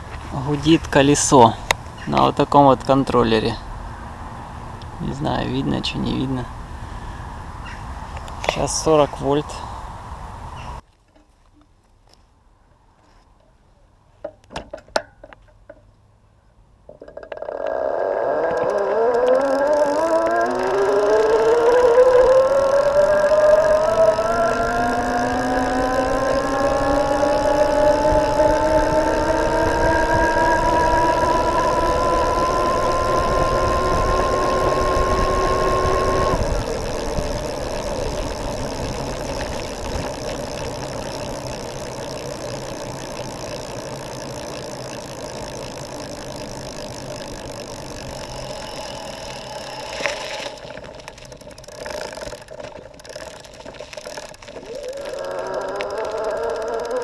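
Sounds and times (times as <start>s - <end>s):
electric bike motor whining: 17.2s - 57.0s
steady rush: 18.6s - 57.0s.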